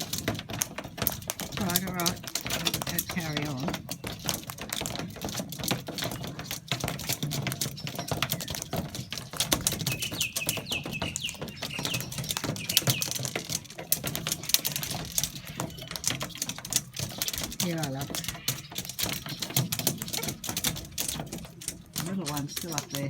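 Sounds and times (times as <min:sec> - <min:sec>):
beaks cracking and pecking food: 0:00.0 - 0:23.0.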